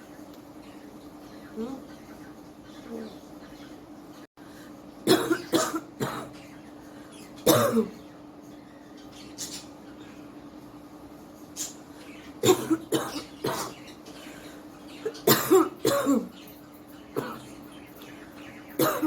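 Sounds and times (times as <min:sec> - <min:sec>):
woman coughing: 0:05.1 - 0:06.3, 0:07.5 - 0:08.0, 0:12.4 - 0:13.8, 0:15.1 - 0:16.3, 0:17.2 - 0:17.4, 0:18.8 - 0:19.0.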